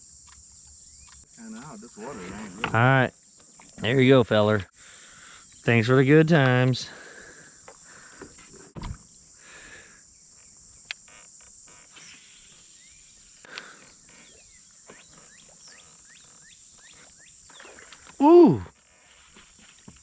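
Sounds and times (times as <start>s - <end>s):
insects chirring: 0.0s - 20.0s
low thump: 8.8s - 9.0s.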